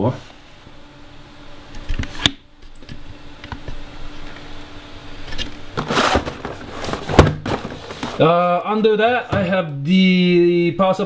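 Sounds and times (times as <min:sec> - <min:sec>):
cardboard boxes scraping and knocking: 0:05.8 - 0:08.3.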